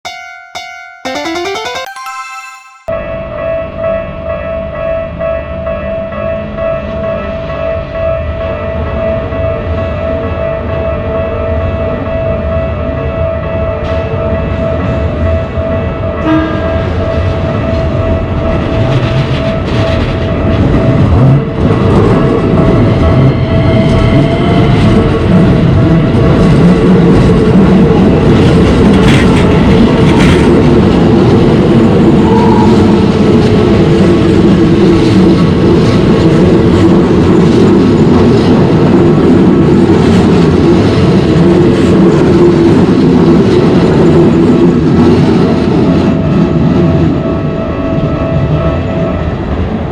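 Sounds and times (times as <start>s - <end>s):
level crossing warning bell: 0.0s - 21.3s
train rumbling: 3.2s - 49.9s.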